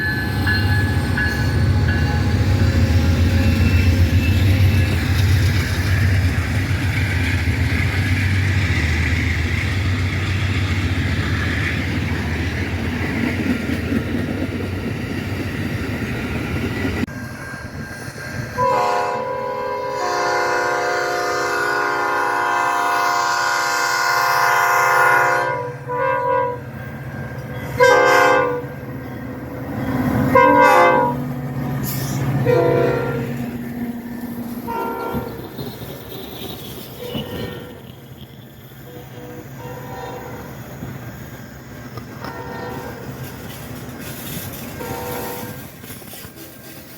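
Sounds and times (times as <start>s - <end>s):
multi-chime locomotive horn: 0.0s - 5.2s, 18.5s - 29.2s, 29.9s - 33.5s, 34.6s - 35.6s, 37.0s - 38.0s, 38.8s - 40.7s, 42.2s - 43.2s, 44.7s - 45.7s
train rumbling past: 0.0s - 46.9s.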